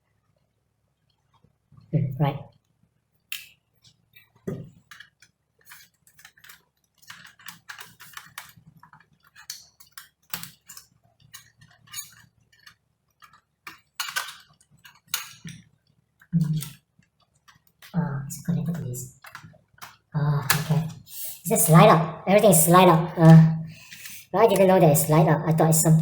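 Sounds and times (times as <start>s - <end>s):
laptop parts clicking and scraping: 3.3s - 17.9s, 19.2s - 20.1s.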